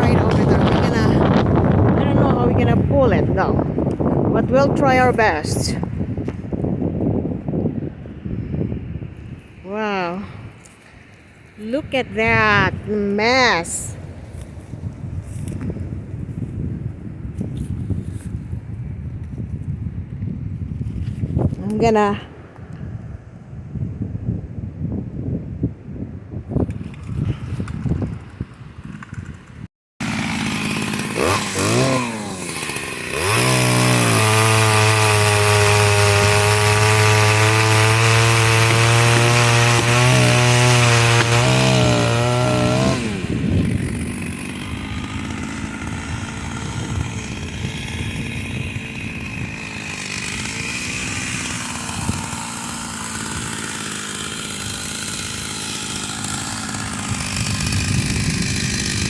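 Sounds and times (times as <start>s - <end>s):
chainsaw revving and cutting wood: 0.0s - 7.2s, 9.6s - 15.8s, 26.7s - 59.0s.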